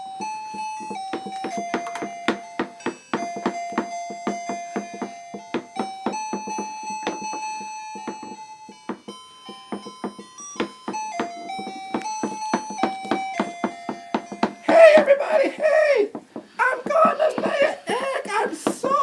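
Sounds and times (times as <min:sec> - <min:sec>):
light piano keyboard tune: 0:00.0 - 0:19.0.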